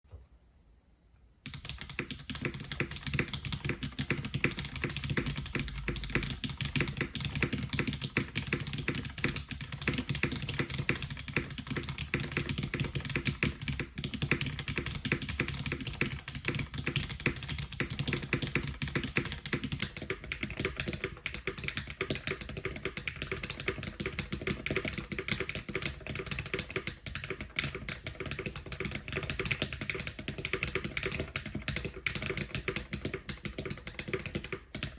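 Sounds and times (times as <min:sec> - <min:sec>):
fast mechanical keyboard typing: 0:01.4 - 0:34.9.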